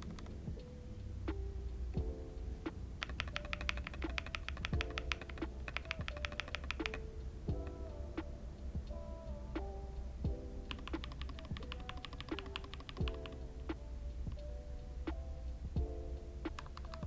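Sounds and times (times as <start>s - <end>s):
mechanical keyboard typing: 0.0s - 0.7s, 2.5s - 7.8s, 10.7s - 13.7s, 16.5s - 17.0s
soft background music: 0.0s - 17.0s.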